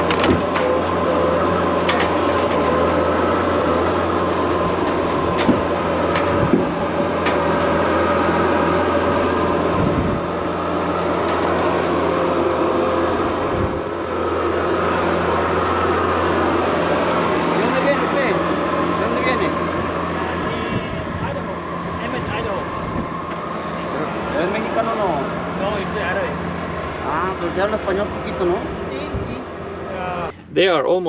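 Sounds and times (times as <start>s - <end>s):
sharp clicks and knocks: 0.0s - 0.9s, 4.2s - 7.7s
engine running steadily: 0.0s - 31.0s.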